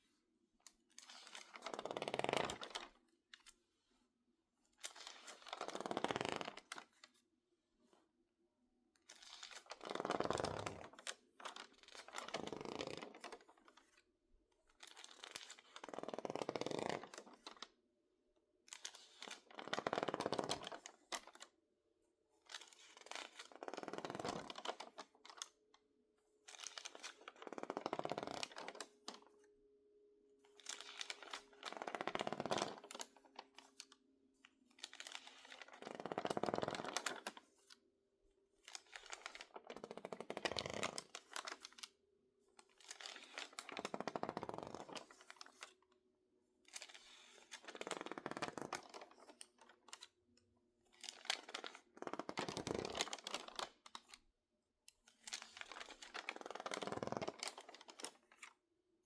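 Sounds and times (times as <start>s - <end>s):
magazine pages crackling: 9.1s - 14.0s, 14.8s - 17.6s, 22.5s - 25.5s, 26.5s - 29.2s, 30.6s - 33.9s, 34.8s - 37.7s, 38.6s - 41.9s, 42.7s - 45.7s, 46.7s - 50.1s, 50.9s - 54.2s, 55.2s - 58.5s.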